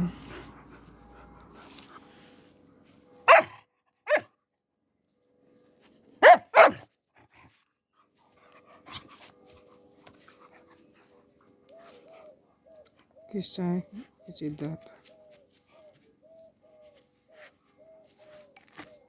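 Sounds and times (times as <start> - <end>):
puppy barking: 3.3 - 4.3, 6.2 - 6.9.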